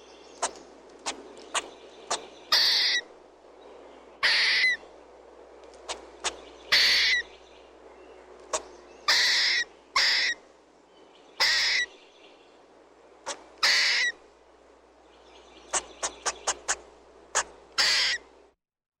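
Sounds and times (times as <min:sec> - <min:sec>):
squirrel chirping: 0:00.2 - 0:03.1, 0:04.2 - 0:04.8, 0:05.8 - 0:07.4, 0:08.5 - 0:10.4, 0:11.4 - 0:11.9, 0:15.6 - 0:18.3.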